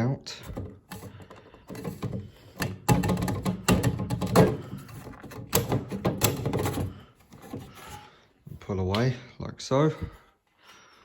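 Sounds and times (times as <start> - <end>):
plastic fridge shelf rattling: 0.5 - 7.8.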